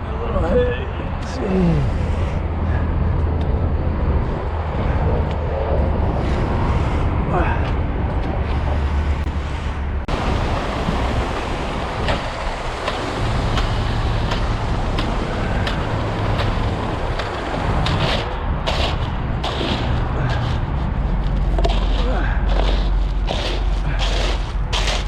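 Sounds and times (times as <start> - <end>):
engine running with low hum: 0.5 - 25.0
knocks and scrapes of work: 12.0 - 25.0.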